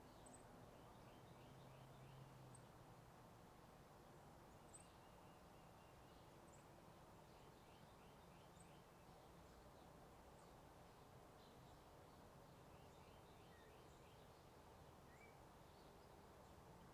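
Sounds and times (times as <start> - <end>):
faint birds chirping: 0.0 - 16.9.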